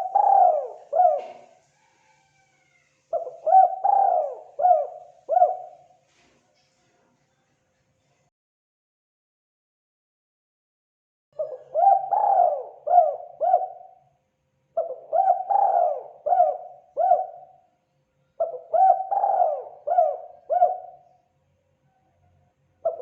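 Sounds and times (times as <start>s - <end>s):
dove cooing: 0.0s - 6.0s, 11.4s - 14.0s, 14.8s - 17.6s, 18.4s - 21.2s.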